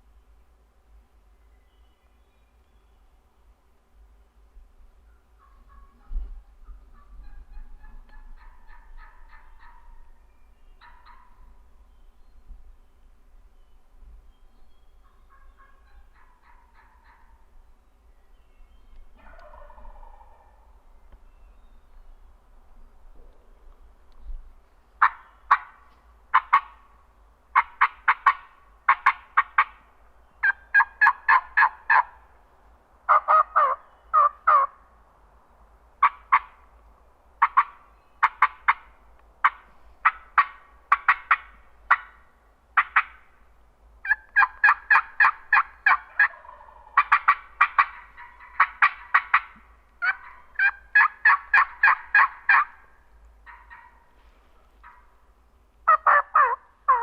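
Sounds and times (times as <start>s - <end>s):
turkey yelping: 5.4s - 10.1s, 10.8s - 11.5s, 15.0s - 17.3s, 19.2s - 20.6s, 25.0s - 26.9s, 27.6s - 29.8s, 30.4s - 32.2s, 33.1s - 34.8s, 36.0s - 36.6s, 37.4s - 42.2s, 44.0s - 54.1s, 54.8s - 55.1s, 55.9s - 57.0s.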